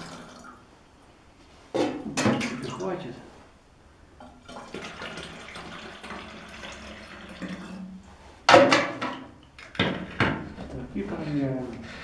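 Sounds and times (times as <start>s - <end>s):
water running into a tank: 0.0s - 0.7s, 1.9s - 3.2s, 4.2s - 8.1s.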